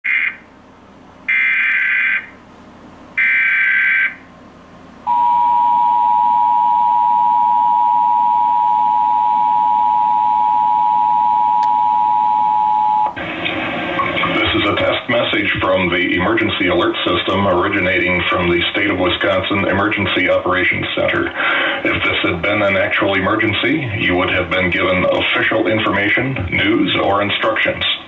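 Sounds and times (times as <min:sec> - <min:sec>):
two-tone attention signal: 0:05.1 - 0:13.2
person speaking: 0:14.0 - 0:28.0.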